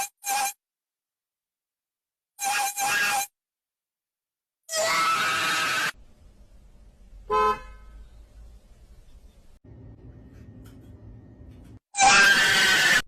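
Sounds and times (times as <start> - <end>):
cat harsh raspy call: 4.7 - 6.0, 12.0 - 13.0.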